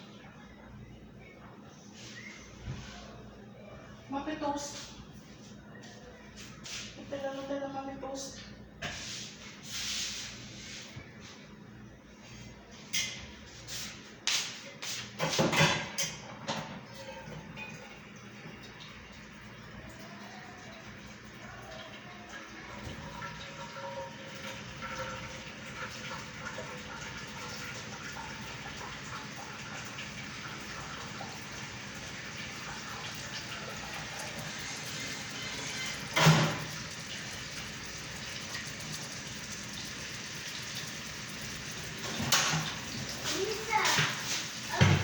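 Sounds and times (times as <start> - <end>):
watery hiss of heating pot: 8.9 - 10.9, 25.8 - 44.8.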